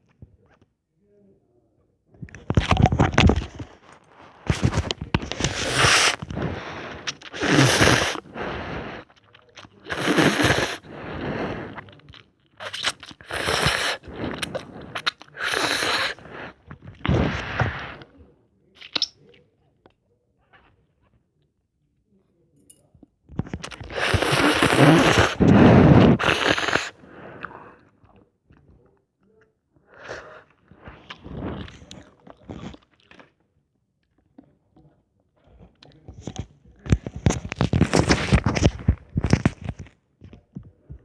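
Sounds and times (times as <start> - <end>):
chewing noodles: 2.3 - 18.0, 23.4 - 28.8, 29.9 - 33.4.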